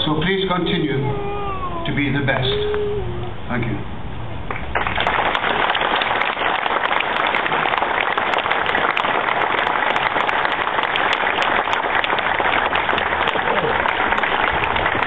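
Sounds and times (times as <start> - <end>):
crowd applauding: 4.5 - 15.0.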